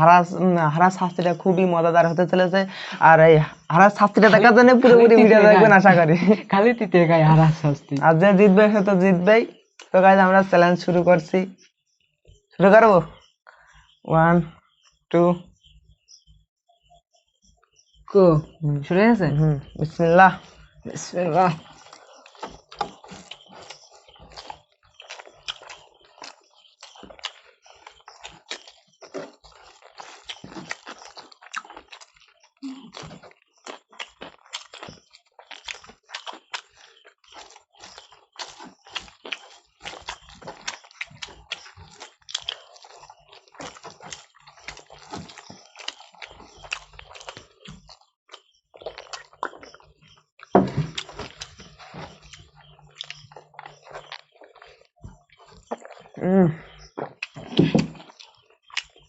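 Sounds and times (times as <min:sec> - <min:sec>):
chewing and mouth smacking: 0:20.4 - 0:56.2, 0:56.8 - 0:59.0.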